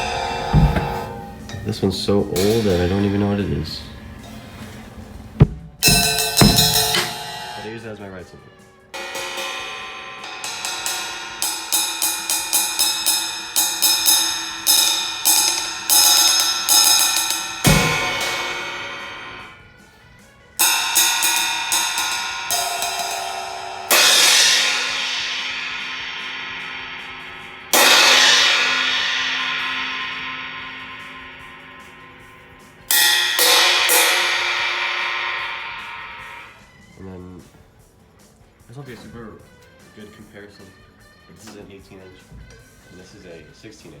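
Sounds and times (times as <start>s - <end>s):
bass drum thump: 0.0s - 1.7s, 5.4s - 7.7s
crash cymbals struck with sticks: 0.0s - 4.5s, 5.4s - 37.0s.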